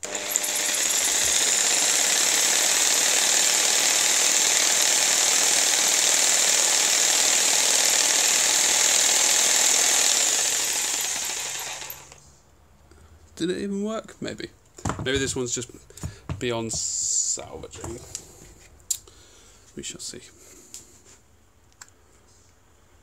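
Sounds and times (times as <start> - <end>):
jigsaw running: 0.0 - 12.2.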